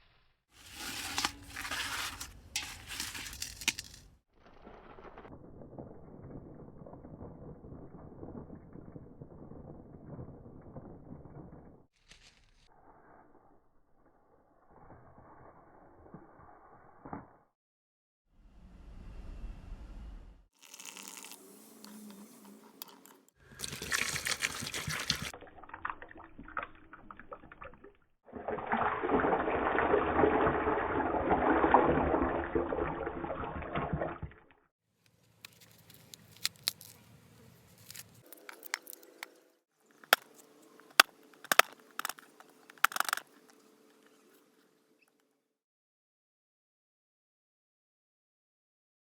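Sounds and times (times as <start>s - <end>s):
liquid pouring into a jar: 20.6s - 21.9s, 22.8s - 34.5s.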